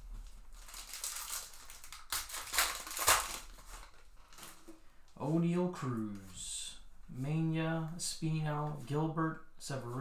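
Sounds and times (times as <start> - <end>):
card pack wrapper tearing and crinkling: 0.3 - 4.7.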